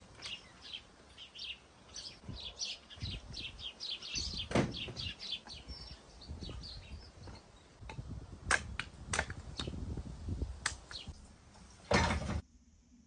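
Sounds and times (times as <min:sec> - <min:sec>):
birds chirping: 0:00.0 - 0:07.8, 0:09.4 - 0:09.9, 0:10.8 - 0:12.0.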